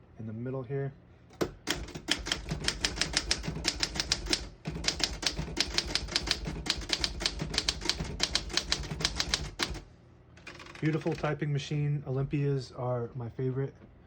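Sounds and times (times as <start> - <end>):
manual typewriter typing: 1.4 - 9.8, 10.4 - 11.4.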